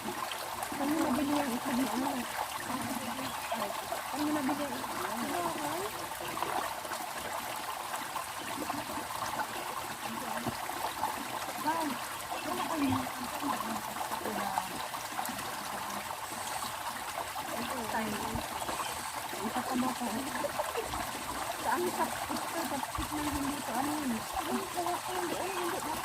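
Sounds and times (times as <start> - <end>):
stream water flowing: 0.0 - 26.0.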